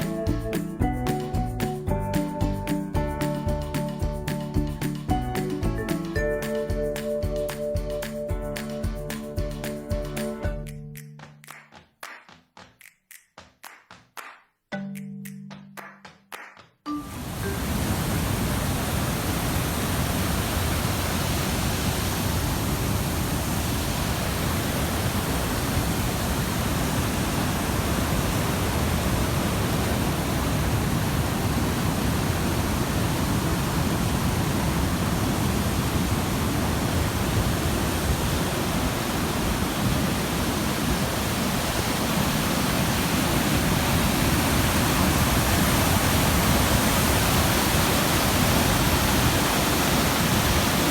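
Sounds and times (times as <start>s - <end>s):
waterfall rushing: 17.0s - 50.9s.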